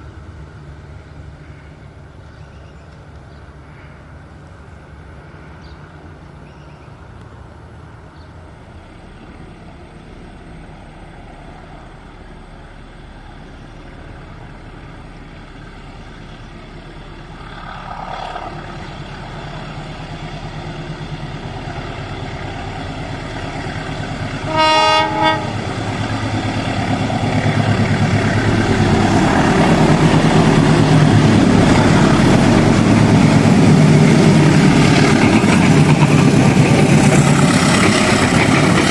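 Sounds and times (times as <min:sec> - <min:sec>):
diesel train approaching: 0:00.0 - 0:38.9
train horn blast: 0:24.4 - 0:25.6.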